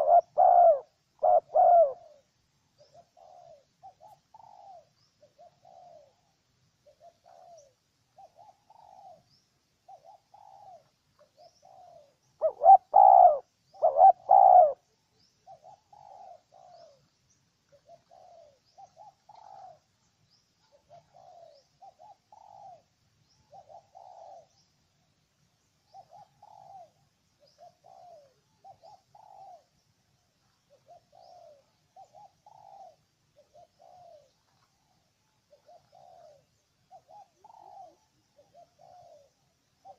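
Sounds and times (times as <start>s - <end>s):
dove cooing: 0.0s - 17.1s, 17.7s - 20.0s, 20.6s - 24.6s, 25.8s - 29.8s, 30.4s - 39.9s.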